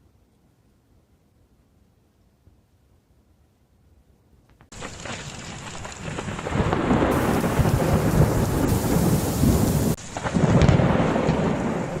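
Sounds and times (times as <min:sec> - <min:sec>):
blizzard wind on microphone: 0:06.2 - 0:10.0.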